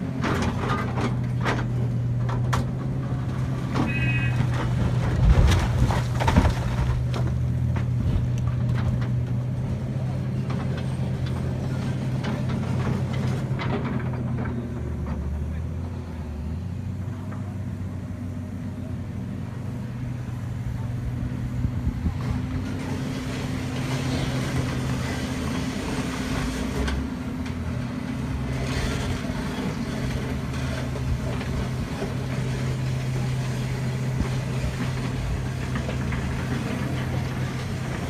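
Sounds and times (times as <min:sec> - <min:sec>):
excavator diesel engine: 0:00.0 - 0:38.0
earth and rock clattering down: 0:04.7 - 0:08.0.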